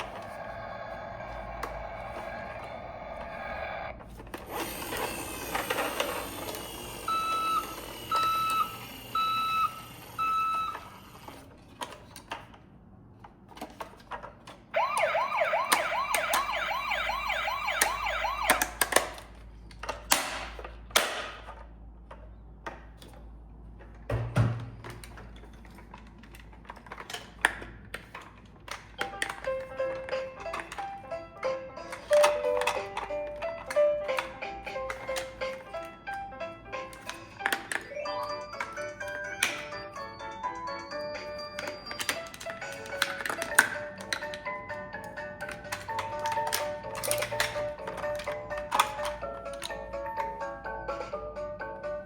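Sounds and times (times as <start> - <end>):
siren beep tones: 7.1 - 11.0, 14.8 - 18.6
yelp siren: 14.8 - 18.7
clicks and clatters: 24.8 - 30.9, 41.4 - 49.8.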